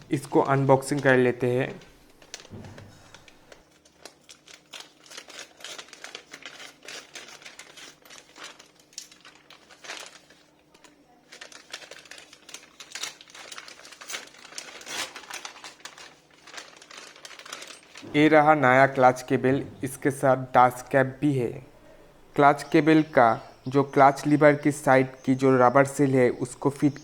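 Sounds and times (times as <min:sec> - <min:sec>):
packaging crinkling: 0:00.0 - 0:20.9.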